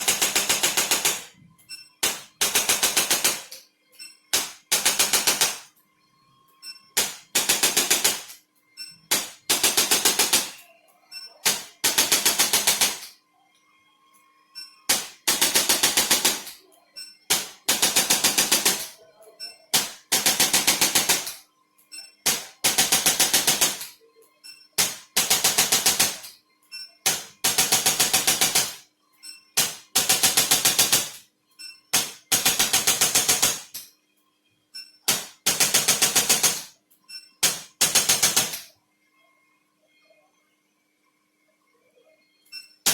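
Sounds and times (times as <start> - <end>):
rapid mechanical tapping: 35.1 - 36.7, 37.4 - 38.7.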